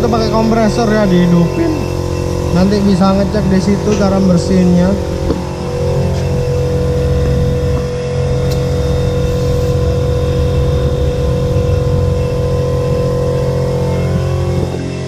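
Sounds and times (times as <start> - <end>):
air compressor humming: 0.0 - 15.0.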